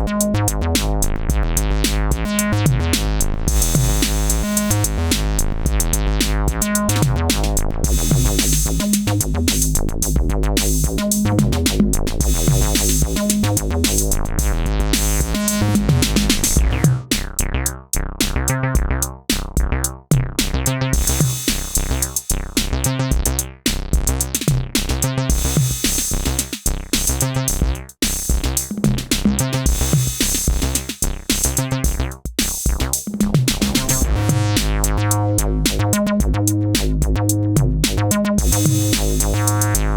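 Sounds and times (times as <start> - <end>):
drum machine beat: 0.0 - 39.9
synthesizer bass line: 0.0 - 39.9.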